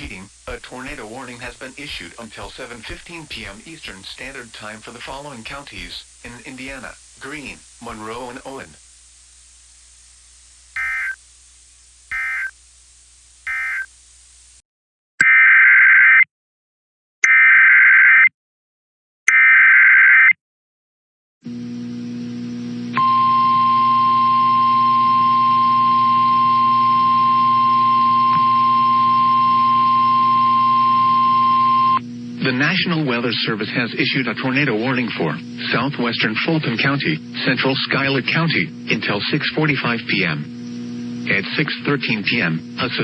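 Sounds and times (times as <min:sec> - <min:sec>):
low radio hum: 0:00.0 - 0:14.6, 0:21.5 - 0:43.0
digital data bursts: 0:10.8 - 0:11.2, 0:12.1 - 0:12.6, 0:13.4 - 0:13.9
steady warning alarm tone: 0:10.8 - 0:11.2, 0:12.1 - 0:12.5, 0:13.5 - 0:13.9, 0:23.0 - 0:33.3.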